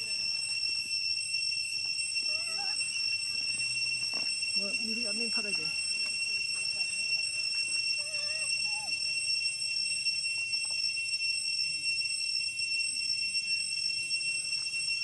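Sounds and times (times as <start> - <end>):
steady high-pitched whine: 0.0 - 15.0
faint squeaky pitch glides: 2.2 - 10.1.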